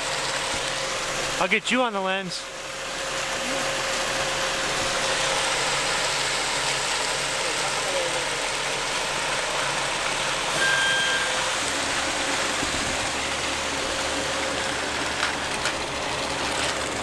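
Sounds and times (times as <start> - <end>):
engine running: 0.0 - 17.0
short high tone: 10.5 - 11.6.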